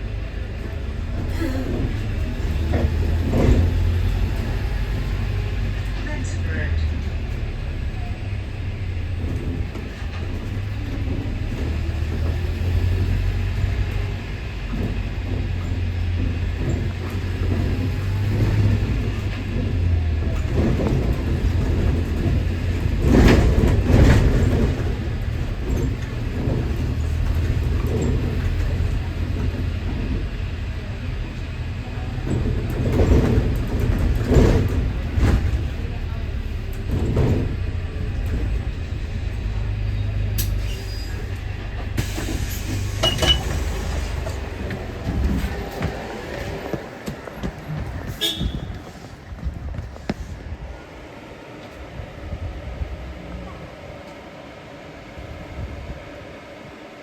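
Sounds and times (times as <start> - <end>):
bus engine and road rumble: 0.0 - 57.0
rattling and knocking: 0.3 - 6.0, 9.0 - 39.8.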